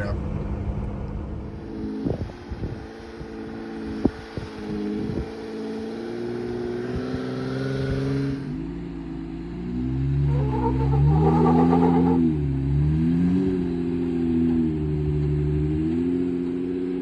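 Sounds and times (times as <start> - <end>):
car engine through exhaust: 0.0 - 17.0.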